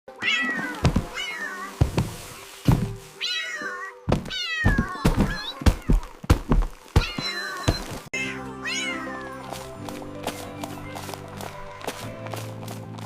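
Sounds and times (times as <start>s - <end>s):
cat meows: 3.2s - 6.0s, 7.0s - 9.3s.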